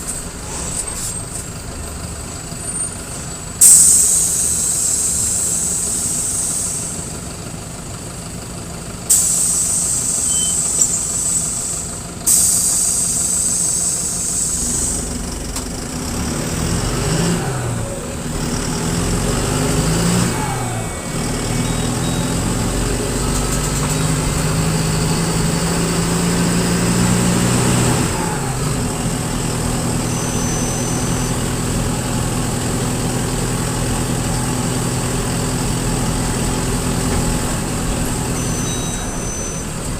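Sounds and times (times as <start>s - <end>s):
bus diesel engine: 0.0s - 39.9s
loud air hissing: 3.1s - 7.3s, 9.1s - 15.3s.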